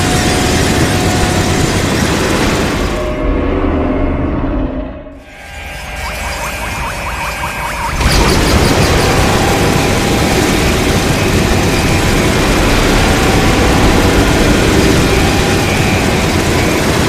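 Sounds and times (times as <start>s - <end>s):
monster rumbling: 7.9s - 17.0s.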